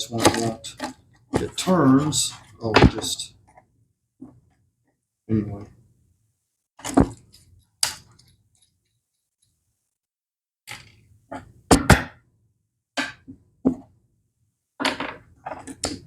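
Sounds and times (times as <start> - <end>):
plastic parts knocking: 0.0 - 1.7.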